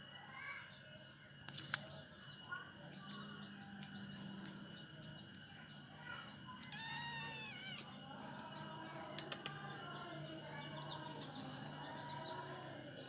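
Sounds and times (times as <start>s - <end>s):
faint steady hum: 0.0s - 13.0s
cat meowing: 6.5s - 8.0s
sharp clicks: 9.0s - 9.6s.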